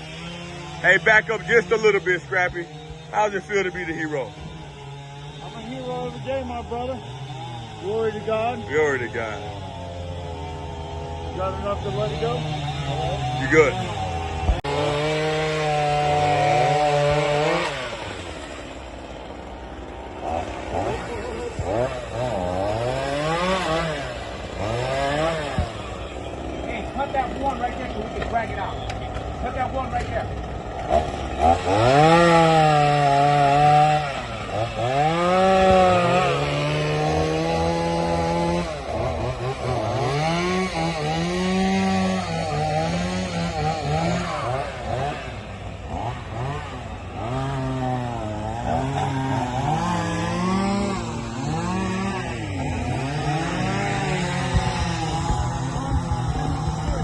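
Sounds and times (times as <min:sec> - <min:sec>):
chainsaw running: 0:00.0 - 0:57.0.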